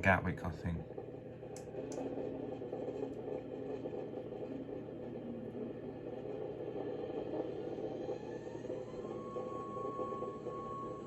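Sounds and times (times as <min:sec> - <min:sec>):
airplane cabin hum: 0:00.0 - 0:04.5.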